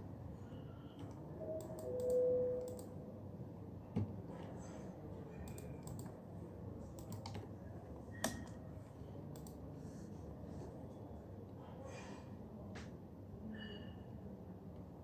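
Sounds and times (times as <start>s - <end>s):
computer keyboard typing: 1.6s - 2.9s, 5.5s - 6.1s, 7.0s - 7.4s.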